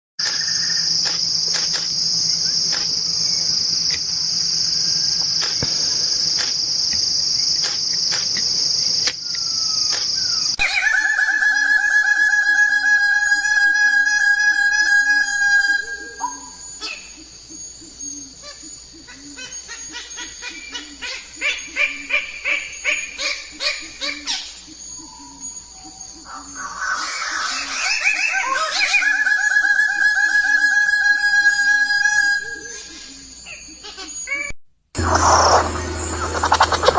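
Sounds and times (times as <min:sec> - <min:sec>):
insects trilling: 0:00.2 - 0:36.9.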